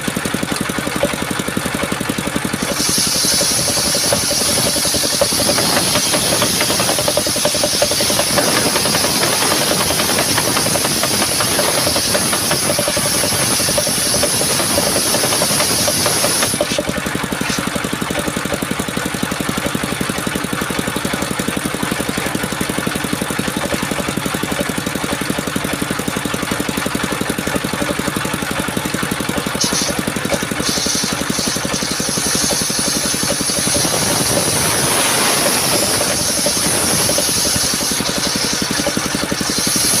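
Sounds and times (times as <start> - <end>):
sawmill engine hum: 0.0 - 40.0
high saw hiss: 2.6 - 16.8, 29.6 - 40.0.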